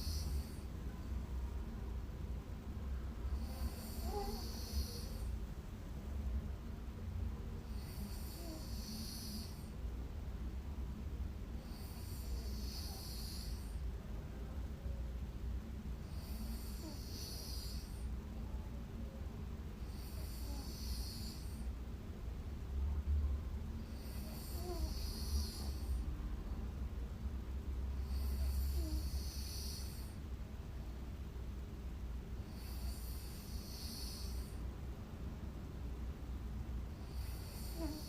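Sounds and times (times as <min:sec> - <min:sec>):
woman snoring: 0:00.0 - 0:00.7, 0:03.4 - 0:05.3, 0:07.7 - 0:09.7, 0:11.6 - 0:13.8, 0:16.0 - 0:18.0, 0:19.8 - 0:21.6, 0:23.8 - 0:26.0, 0:28.0 - 0:30.2, 0:32.5 - 0:34.6, 0:37.0 - 0:38.0.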